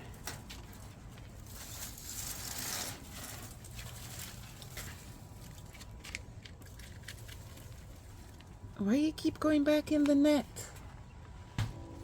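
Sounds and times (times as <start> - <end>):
netting rustling: 0.6 - 8.4.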